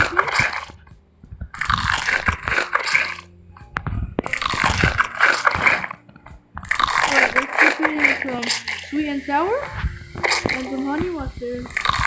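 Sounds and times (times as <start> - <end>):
person chewing crunchy food: 0.0 - 0.8, 1.4 - 3.3, 4.2 - 8.9, 9.9 - 10.7, 11.7 - 12.0.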